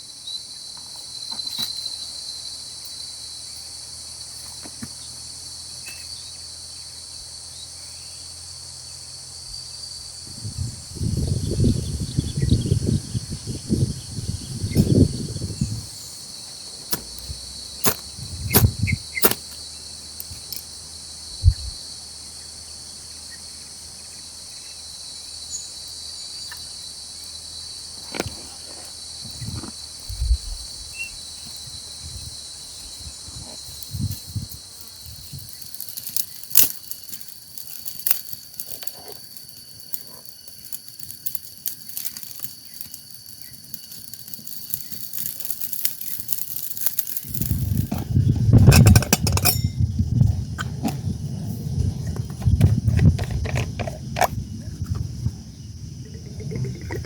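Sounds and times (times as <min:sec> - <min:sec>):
insect chorus chirring: 0:00.0 - 0:57.0
scattered knocks and clicks: 0:47.4 - 0:49.8.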